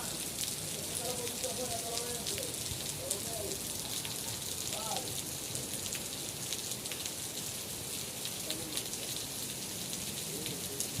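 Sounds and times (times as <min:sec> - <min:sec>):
rain falling: 0:00.0 - 0:11.0
raindrops ticking: 0:00.0 - 0:11.0.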